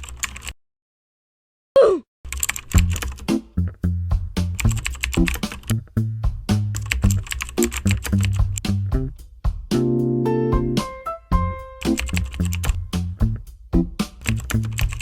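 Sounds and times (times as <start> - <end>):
rapid sharp clicks: 2.3 - 3.4, 4.5 - 5.8, 6.7 - 8.7, 11.8 - 12.8, 14.2 - 15.0
music with bass line: 2.8 - 15.0.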